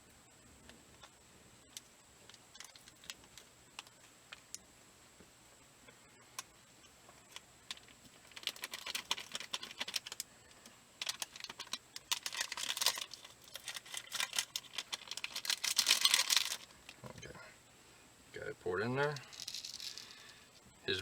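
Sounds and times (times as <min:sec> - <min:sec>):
plastic packet crinkling: 0:07.3 - 0:10.3, 0:11.0 - 0:17.0, 0:19.0 - 0:20.3.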